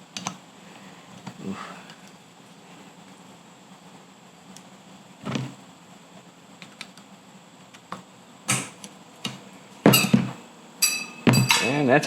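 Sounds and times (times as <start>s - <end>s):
snap ring springing free: 9.9s - 10.2s, 10.8s - 11.8s.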